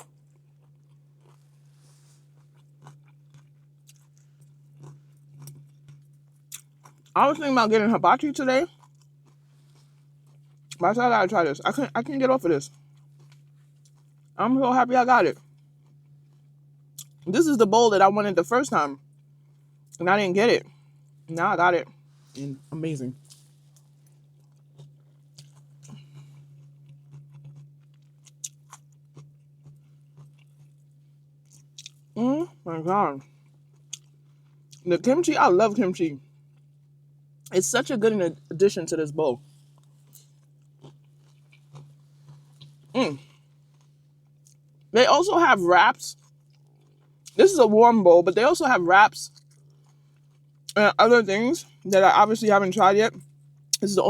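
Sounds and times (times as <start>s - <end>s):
person chewing food: 0.0s - 8.0s, 8.6s - 14.4s, 15.3s - 17.3s, 20.6s - 35.1s, 39.4s - 44.9s, 46.1s - 47.7s, 49.3s - 50.8s
steady low hum: 0.0s - 54.0s
small crunches and clicks: 23.2s - 30.8s, 39.7s - 44.9s.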